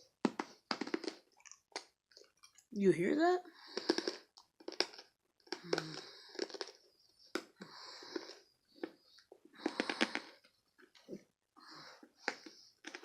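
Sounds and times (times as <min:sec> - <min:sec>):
hard candy crunched between teeth: 0:00.2 - 0:02.6, 0:03.6 - 0:10.5, 0:12.0 - 0:13.0.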